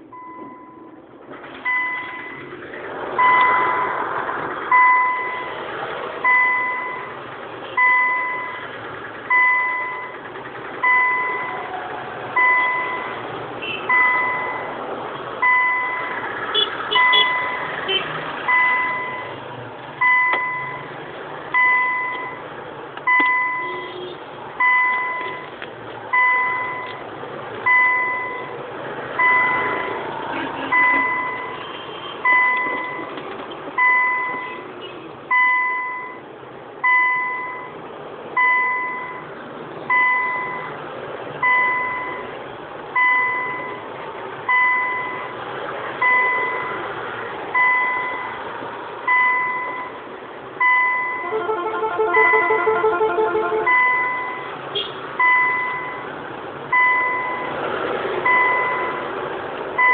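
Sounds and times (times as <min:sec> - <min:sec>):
car warning beeper: 0:00.1 - 0:01.0, 0:01.6 - 0:02.5, 0:03.2 - 0:04.0, 0:04.7 - 0:05.6, 0:06.2 - 0:08.7, 0:09.3 - 0:11.8, 0:12.4 - 0:14.8, 0:15.4 - 0:19.4, 0:20.0 - 0:20.9, 0:21.5 - 0:22.4, 0:23.0 - 0:25.5, 0:26.1 - 0:27.0, 0:27.6 - 0:28.6, 0:29.2 - 0:33.1, 0:33.8 - 0:37.8, 0:38.4 - 0:39.3, 0:39.9 - 0:40.8, 0:41.4 - 0:42.4, 0:43.0 - 0:43.9, 0:44.5 - 0:45.4, 0:46.0 - 0:46.9, 0:47.5 - 0:48.4, 0:49.1 - 0:57.6, 0:58.2 - 0:59.1.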